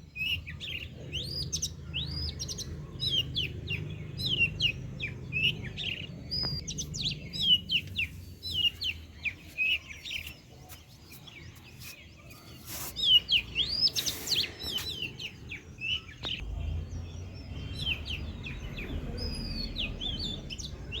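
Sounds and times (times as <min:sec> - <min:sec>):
small birds chirping: 0:00.0 - 0:21.0
low background rumble: 0:14.6 - 0:21.0.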